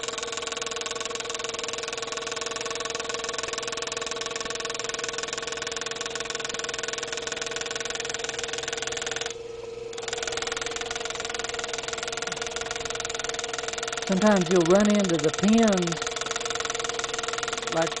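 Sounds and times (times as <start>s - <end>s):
pneumatic engraving tool buzzing: 0.0s - 18.0s.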